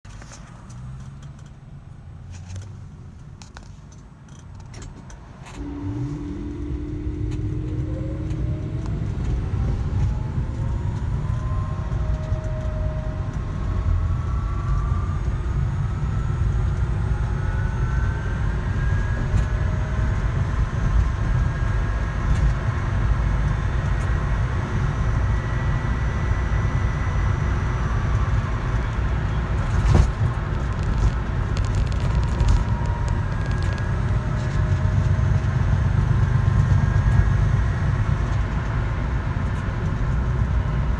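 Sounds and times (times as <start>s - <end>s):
car low rumble: 0.0s - 40.9s
whine rising in pitch: 5.3s - 40.9s.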